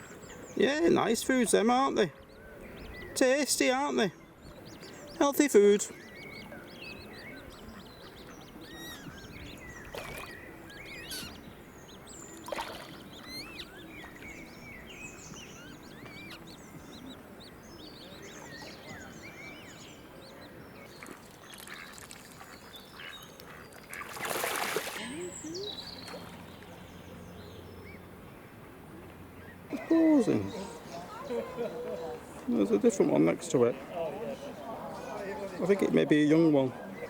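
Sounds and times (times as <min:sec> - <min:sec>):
short chirping bird calls: 0:05.9 - 0:17.2.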